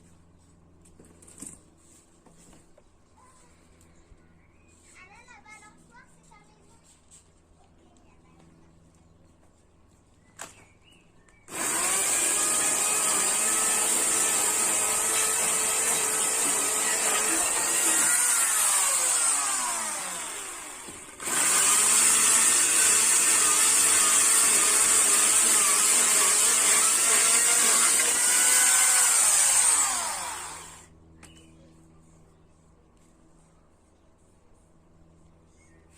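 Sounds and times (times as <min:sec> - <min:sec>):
chainsaw running at full speed: 0:11.5 - 0:30.9.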